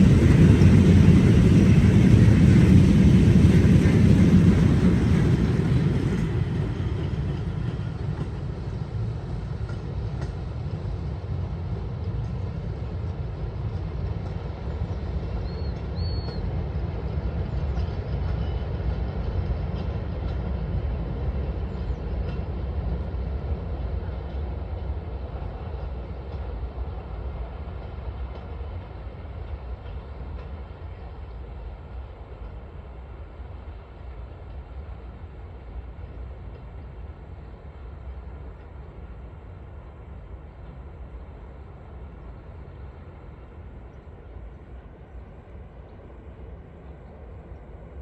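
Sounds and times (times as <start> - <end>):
train rumbling past: 0.0 - 48.0.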